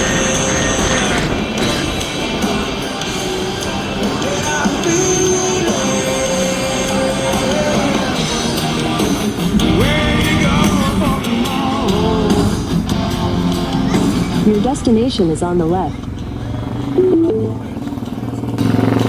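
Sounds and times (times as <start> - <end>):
rock music with singing and guitar: 0.0 - 14.4.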